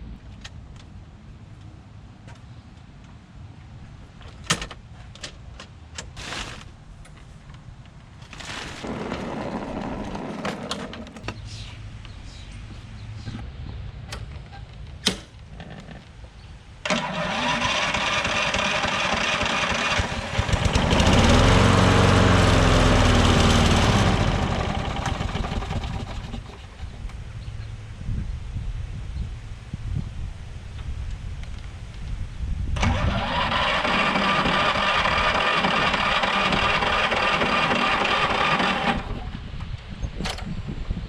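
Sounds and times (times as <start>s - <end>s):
lawn mower engine running: 8.2s - 11.3s, 16.8s - 27.2s, 32.8s - 39.4s
electric starter: 16.8s - 26.7s, 32.8s - 39.4s.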